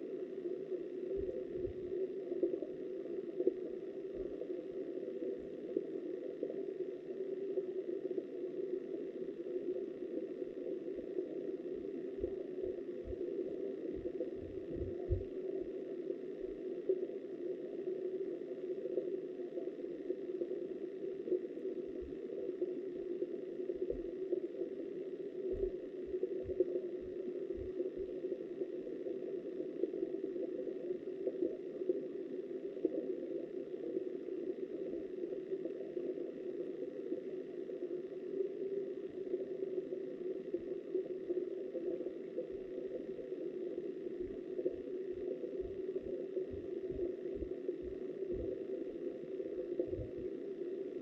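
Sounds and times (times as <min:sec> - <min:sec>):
muffled underwater river rush: 0:07.5 - 0:17.1, 0:40.5 - 0:51.0.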